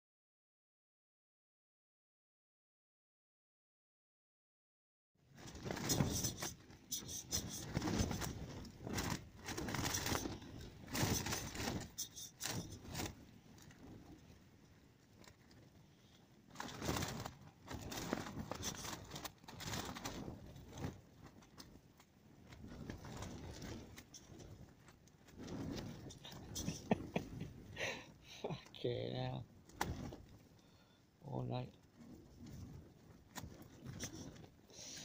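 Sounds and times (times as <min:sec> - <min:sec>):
tent fabric flapping: 0:05.2 - 0:35.0
strong wind gusting: 0:05.6 - 0:13.2, 0:25.4 - 0:28.3.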